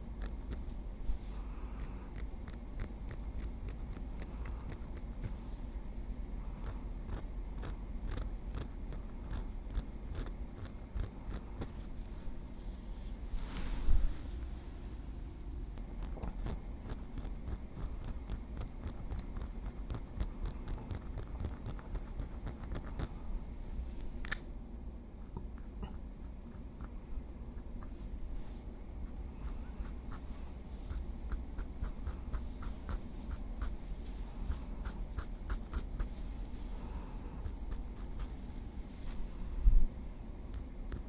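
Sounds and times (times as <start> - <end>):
steady low hum: 0.0 - 41.0.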